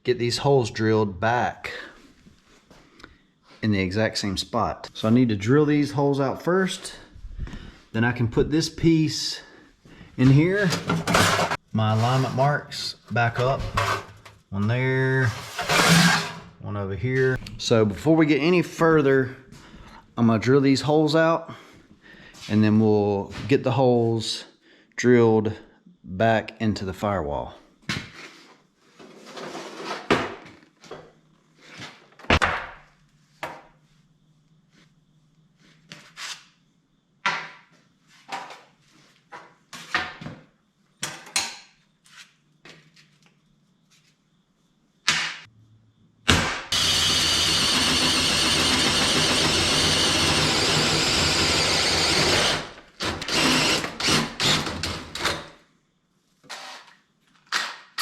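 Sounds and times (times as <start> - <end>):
metal parts clanking: 10.6 - 11.6, 13.6 - 14.3
power drill drilling sheet metal: 15.4 - 16.4, 46.7 - 55.4.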